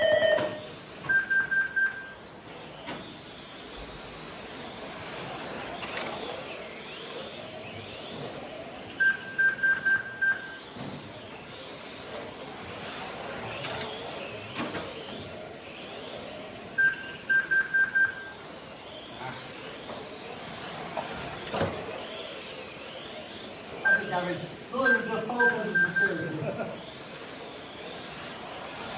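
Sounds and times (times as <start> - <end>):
short electronic beeps: 0.0 - 2.2, 9.0 - 10.6, 16.8 - 18.3, 23.9 - 24.1, 24.8 - 26.2
electric rc car motors whining: 0.0 - 28.9.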